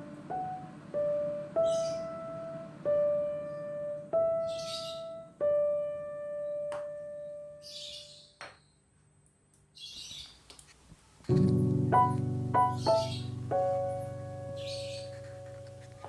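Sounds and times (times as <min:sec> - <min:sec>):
sustained piano notes: 0:00.0 - 0:07.6, 0:11.3 - 0:16.0.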